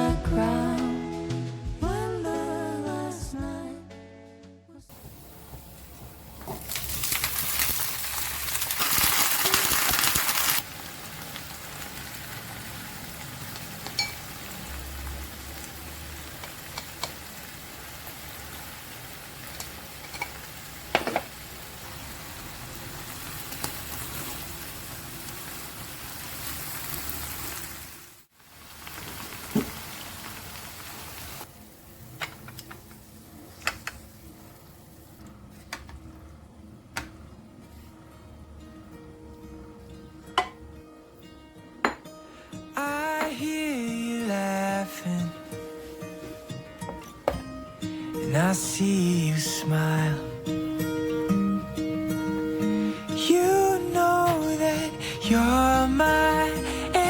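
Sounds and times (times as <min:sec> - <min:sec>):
food sizzling in hot oil: 0:04.9 - 0:32.0.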